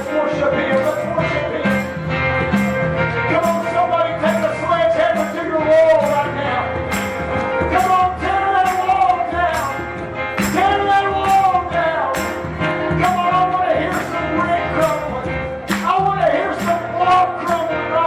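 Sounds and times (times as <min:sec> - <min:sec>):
church worship music: 0:00.0 - 0:18.0
tambourine strikes: 0:05.2 - 0:17.7.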